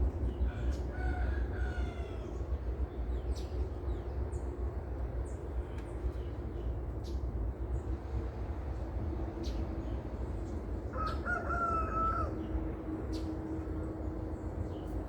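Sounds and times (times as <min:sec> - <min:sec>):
rooster crowing: 0:00.5 - 0:02.4, 0:10.9 - 0:12.5.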